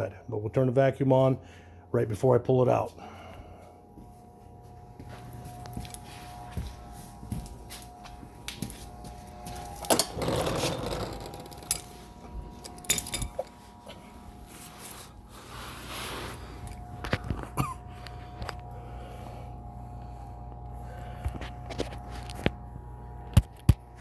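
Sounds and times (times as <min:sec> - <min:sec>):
faint steady hum: 0:00.0 - 0:24.0
rustling of tools: 0:08.6 - 0:15.2
tools and parts clicking and clanking: 0:09.4 - 0:14.0.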